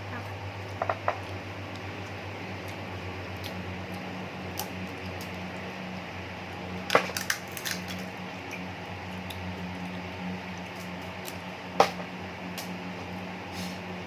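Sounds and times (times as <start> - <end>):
steady low hum: 0.0 - 14.0
shrimp shells cracking: 6.9 - 8.1.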